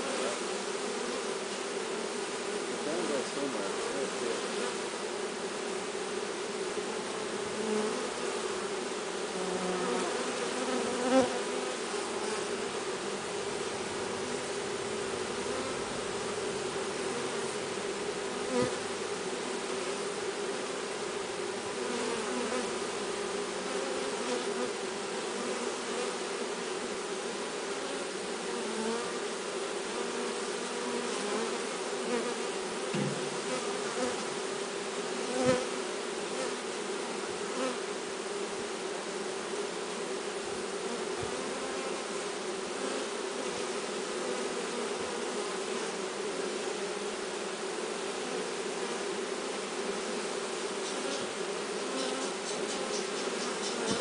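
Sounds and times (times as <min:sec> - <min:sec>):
bee swarm buzzing: 0:00.0 - 0:54.0
single knock: 0:32.9 - 0:33.3.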